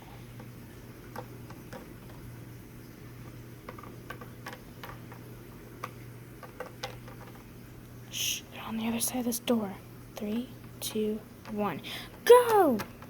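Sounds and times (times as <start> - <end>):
plastic toys clicking on surface: 3.6 - 5.2.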